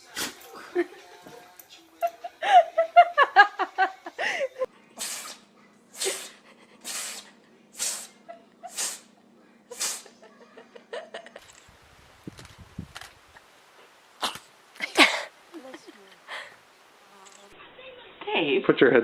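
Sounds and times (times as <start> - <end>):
animal sneezing: 5.0 - 10.2.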